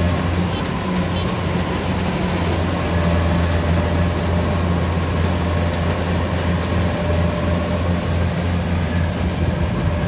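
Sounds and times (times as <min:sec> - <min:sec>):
diesel engine droning: 0:00.0 - 0:10.0.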